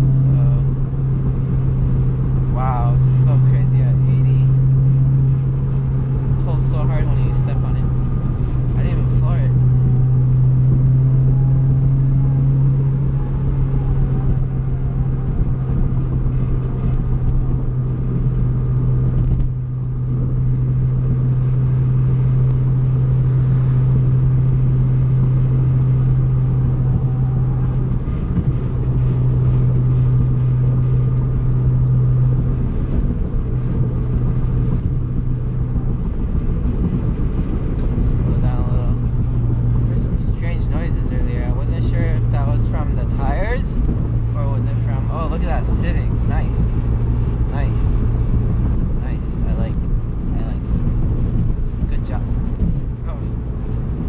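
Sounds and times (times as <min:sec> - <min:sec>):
car engine droning: 0:00.0 - 0:54.0
road rumble: 0:00.0 - 0:54.0.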